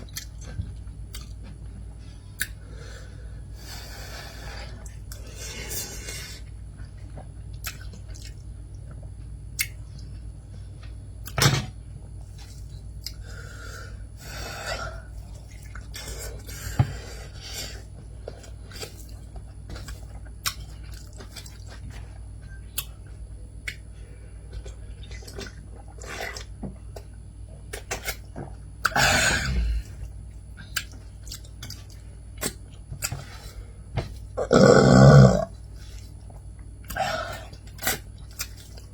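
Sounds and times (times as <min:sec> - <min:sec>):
chewing with clicks and smacks: 0:00.0 - 0:02.6, 0:06.7 - 0:11.4, 0:12.3 - 0:13.3, 0:17.9 - 0:29.0, 0:29.8 - 0:33.3, 0:35.5 - 0:38.9
steady low hum: 0:00.0 - 0:38.9
loud mouth noises: 0:34.4 - 0:35.6.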